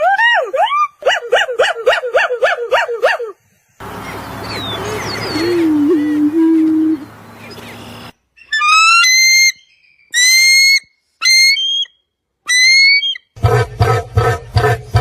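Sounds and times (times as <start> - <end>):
bird whistled calls: 4.4 - 13.3.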